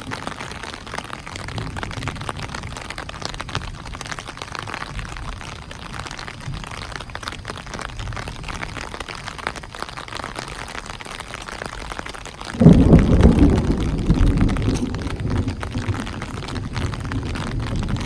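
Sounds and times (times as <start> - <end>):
steady rain falling: 0.0 - 18.0
thunder rumble: 12.5 - 18.0.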